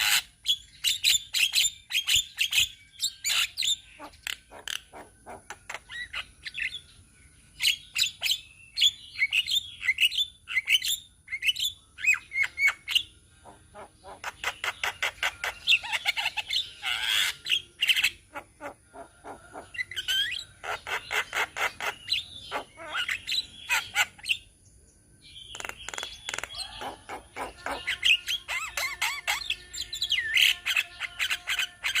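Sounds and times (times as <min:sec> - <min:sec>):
mynas calling: 0:03.1 - 0:06.8, 0:12.0 - 0:24.4, 0:25.5 - 0:32.0.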